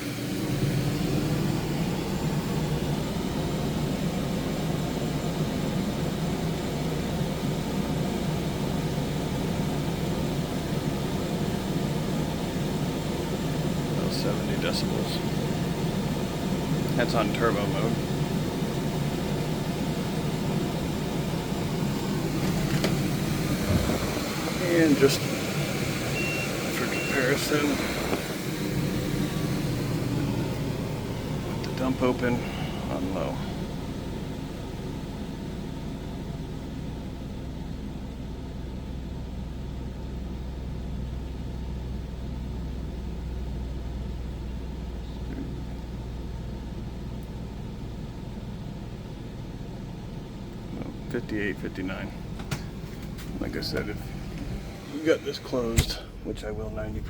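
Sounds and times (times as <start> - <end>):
air conditioner running: 0.0 - 57.0
low constant hum: 0.0 - 57.0
air rushing from vent: 17.9 - 34.0.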